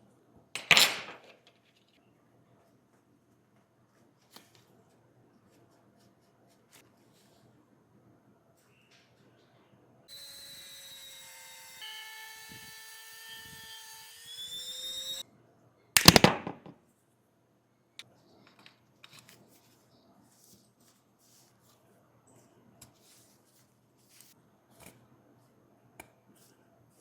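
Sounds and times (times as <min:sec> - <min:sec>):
electric motor tool whining: 0:10.1 - 0:15.2.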